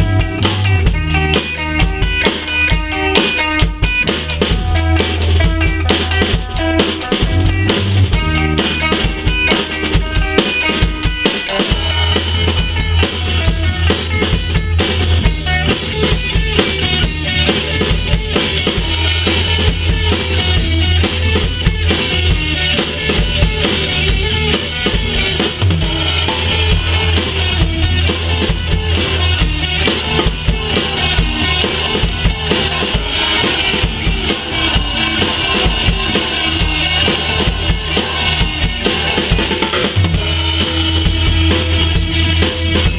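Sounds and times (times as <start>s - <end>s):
bass guitar: 0.0s - 42.9s
drum kit: 0.0s - 42.9s
electric guitar: 0.0s - 42.9s.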